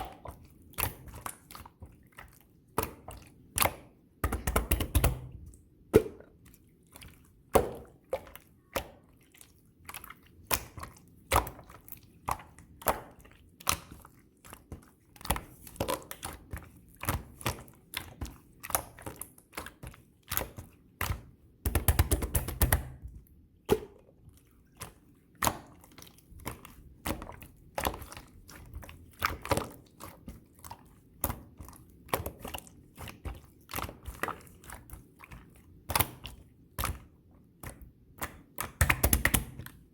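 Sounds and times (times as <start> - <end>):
slime squishing and popping: 37.6 - 39.8.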